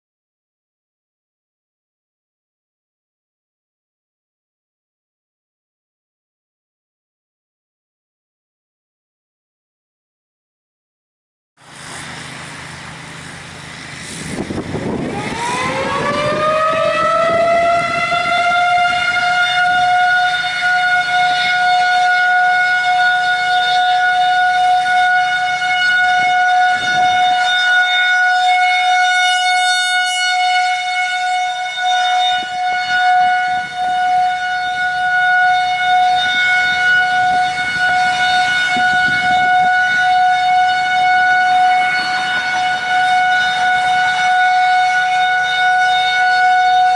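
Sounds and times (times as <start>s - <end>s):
warning siren winding up: 14.3s - 46.9s.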